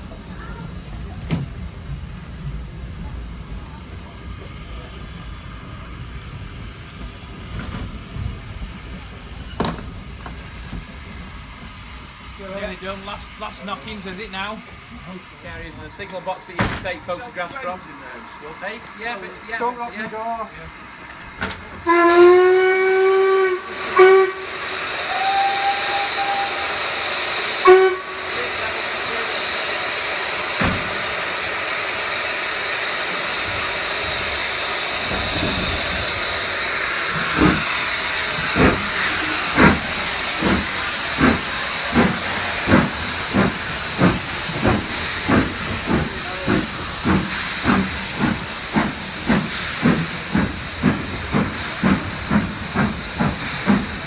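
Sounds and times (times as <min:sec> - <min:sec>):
locomotive exhaust beats: 0:00.0 - 0:54.0
steam hissing: 0:04.1 - 0:54.0
steam locomotive whistle blasts: 0:21.8 - 0:29.1.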